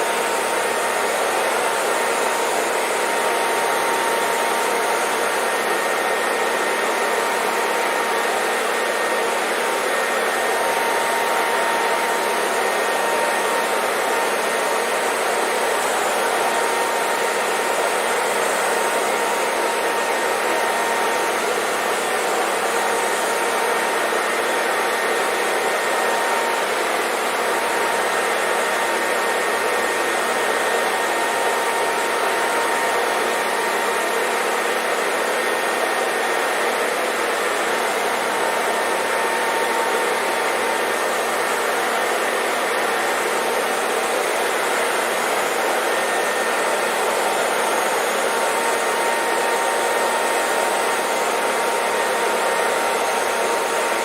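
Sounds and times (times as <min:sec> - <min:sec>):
hair dryer running: 0:00.0 - 0:54.0.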